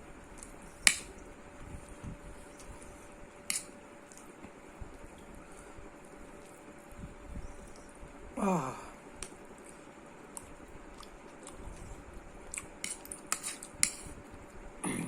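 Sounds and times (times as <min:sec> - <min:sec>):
person chewing food: 0:09.6 - 0:14.2.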